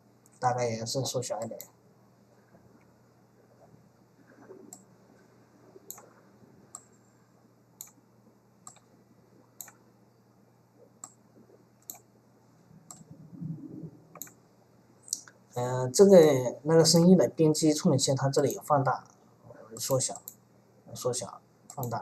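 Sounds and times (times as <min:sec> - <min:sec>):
faint computer mouse clicks: 0:05.9 - 0:06.1, 0:06.7 - 0:07.0, 0:07.8 - 0:08.0, 0:08.6 - 0:08.9, 0:09.6 - 0:09.8, 0:11.0 - 0:11.2, 0:11.8 - 0:12.1, 0:14.2 - 0:14.4, 0:19.8 - 0:20.4, 0:21.7 - 0:22.0.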